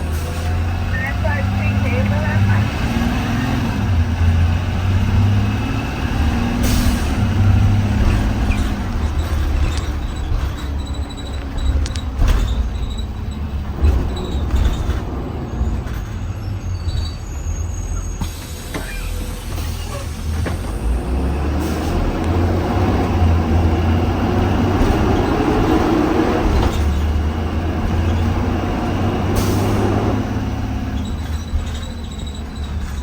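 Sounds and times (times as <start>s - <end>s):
bus engine running: 0.0s - 33.0s
road noise: 0.0s - 33.0s
air brake hiss: 18.2s - 20.6s.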